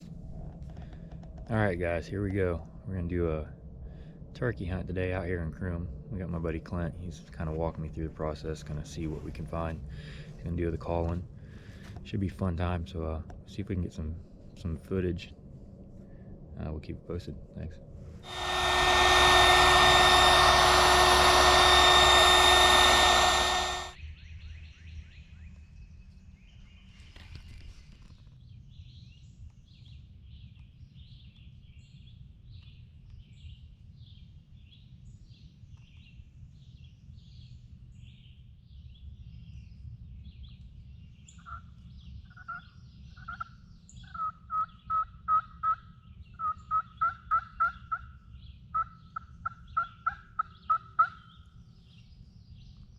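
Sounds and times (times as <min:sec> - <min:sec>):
loud rushing noise with whine: 0:18.3 - 0:24.0
turkey yelps: 0:46.4 - 0:48.1, 0:48.8 - 0:51.2.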